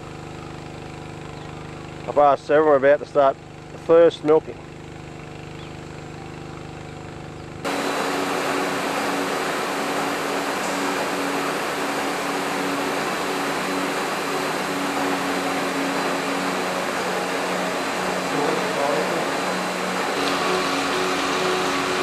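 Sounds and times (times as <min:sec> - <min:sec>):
machinery humming: 0:00.0 - 0:22.0
loud steady rushing noise: 0:07.6 - 0:22.0.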